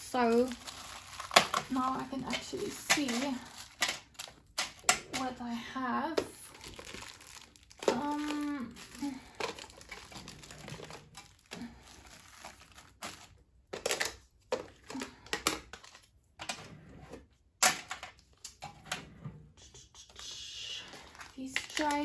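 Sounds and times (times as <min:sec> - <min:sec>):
plastic bags crinkling: 0:00.0 - 0:16.0, 0:20.8 - 0:22.0.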